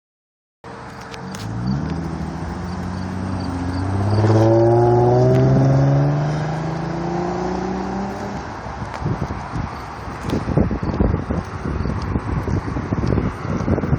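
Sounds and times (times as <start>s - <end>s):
car accelerating past: 1.3s - 8.5s.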